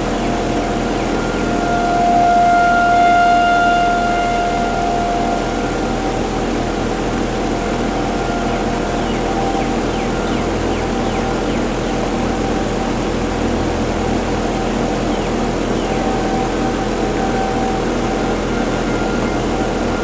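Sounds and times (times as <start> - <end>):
outdoor warning sirens steady tone: 0.0 - 20.0.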